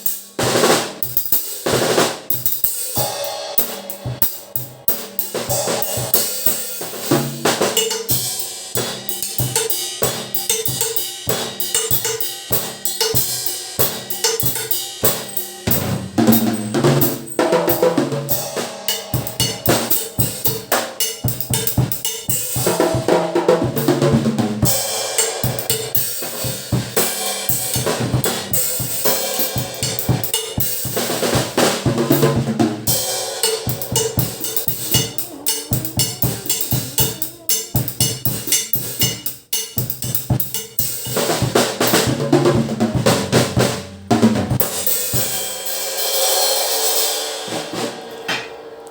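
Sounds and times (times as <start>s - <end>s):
hi-hat and cymbal wash: 0.0s - 48.0s
bass drum strikes: 15.7s - 17.1s, 41.4s - 44.8s.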